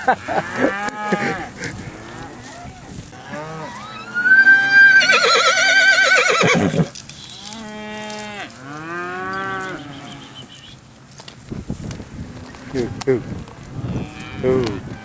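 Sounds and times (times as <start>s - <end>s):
cattle bawling: 0.3s - 10.8s.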